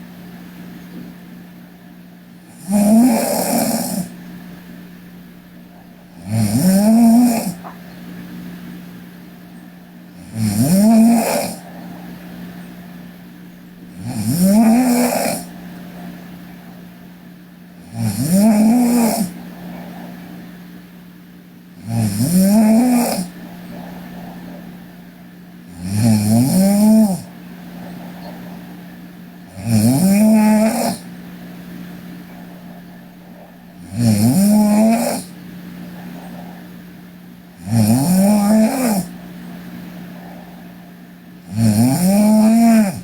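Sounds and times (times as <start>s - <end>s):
steady low hum: 0.0s - 43.0s
woman snoring: 2.5s - 4.2s, 5.9s - 7.7s, 10.1s - 12.1s, 13.8s - 15.6s, 17.8s - 19.7s, 21.8s - 24.7s, 25.7s - 27.3s, 29.5s - 31.1s, 32.4s - 35.4s, 37.6s - 39.2s, 41.5s - 43.0s.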